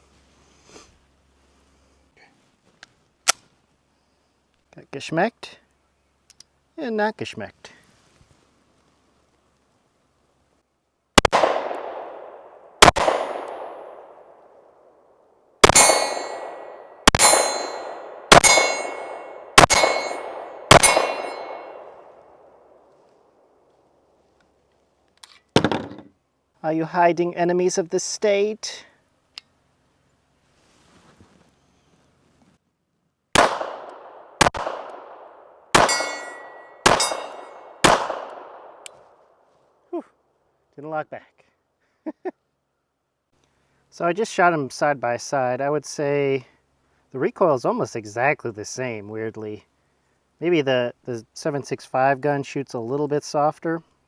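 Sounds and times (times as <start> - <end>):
pistol shots with ringing echo: 11.2 - 14.4, 15.6 - 22.8, 33.4 - 38.9.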